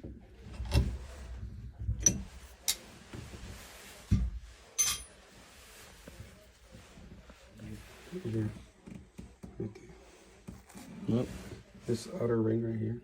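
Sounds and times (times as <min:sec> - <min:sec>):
short metallic rings: 0:04.8 - 0:05.1
metal tools clinking: 0:04.8 - 0:05.2.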